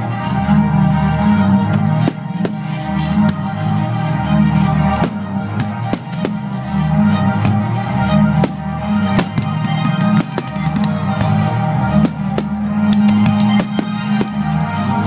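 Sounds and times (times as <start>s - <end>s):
loud music with drums: 1.7s - 3.4s, 5.0s - 6.6s, 8.4s - 14.7s
firework bangs and crackles: 5.0s - 6.6s, 8.4s - 14.8s.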